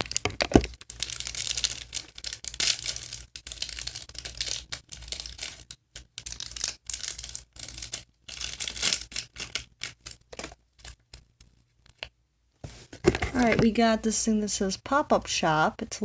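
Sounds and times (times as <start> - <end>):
packaging tearing and crinkling: 0.0 - 11.5.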